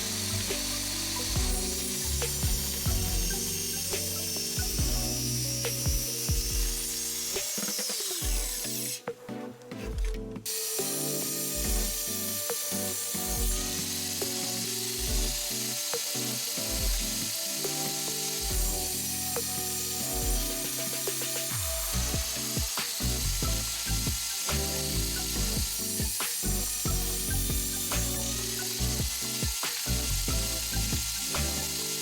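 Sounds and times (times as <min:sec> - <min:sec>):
background music: 0:00.0 - 0:32.0
workshop tool noise: 0:05.5 - 0:09.0.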